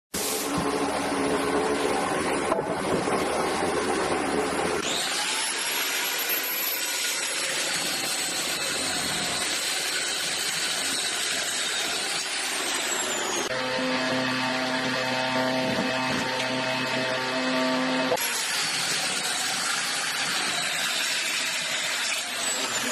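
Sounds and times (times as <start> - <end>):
power tool motor whining: 4.8 - 22.9.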